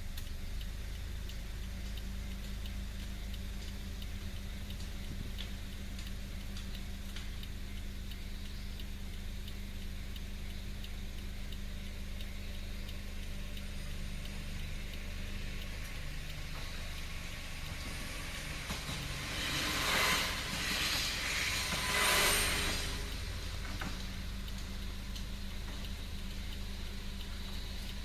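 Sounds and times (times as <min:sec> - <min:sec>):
level crossing alarm ticking: 0:00.0 - 0:28.0
low drone: 0:00.0 - 0:28.0
diesel railcar passing: 0:11.8 - 0:28.0.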